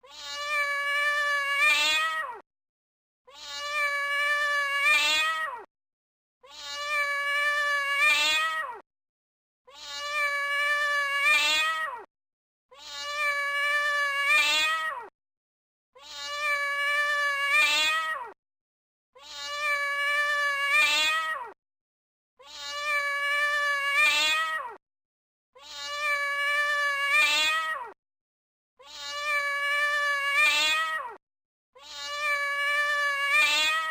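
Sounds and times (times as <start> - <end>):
cat meowing: 0.0 - 2.4, 3.3 - 5.7, 6.4 - 8.8, 9.7 - 12.1, 12.7 - 15.1, 16.0 - 18.4, 19.2 - 21.6, 22.4 - 24.8, 25.6 - 28.0, 28.8 - 31.2, 31.8 - 33.9.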